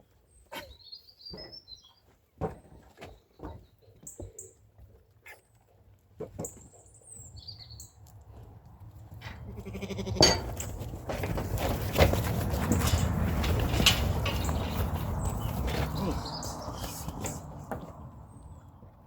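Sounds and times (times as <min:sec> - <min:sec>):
sheep bleating: 0:09.5 - 0:10.4
rough scuffling: 0:10.3 - 0:18.1.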